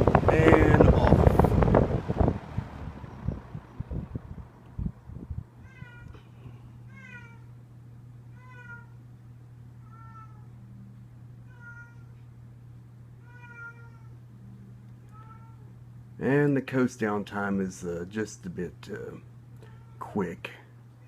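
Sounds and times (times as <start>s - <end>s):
cat meowing: 5.6s - 6.2s, 6.9s - 7.5s, 8.3s - 9.0s, 9.8s - 10.5s, 11.5s - 12.2s, 13.2s - 14.2s, 15.0s - 15.7s.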